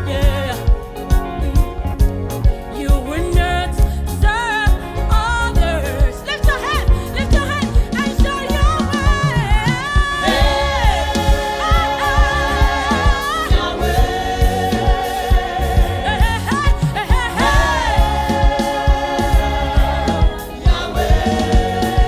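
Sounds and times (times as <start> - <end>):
steady drum beat: 0.0 - 22.0
choir singing: 8.9 - 22.0.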